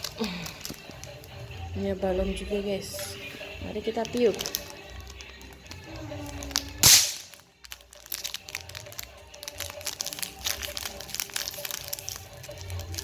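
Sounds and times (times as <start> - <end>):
faint background music: 0.0 - 13.0
plastic being crumpled: 4.0 - 13.0.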